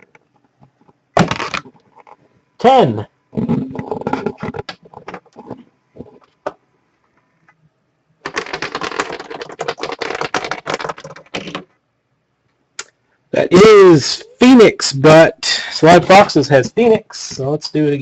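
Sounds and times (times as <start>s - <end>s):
rapid dense clicking and clattering: 8.2s - 11.7s.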